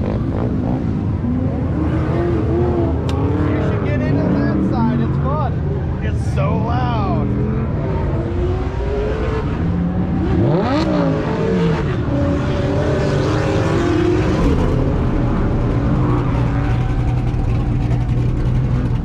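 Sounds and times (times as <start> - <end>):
drone of other engines: 0.0 - 19.0
car engine revving: 7.2 - 19.0.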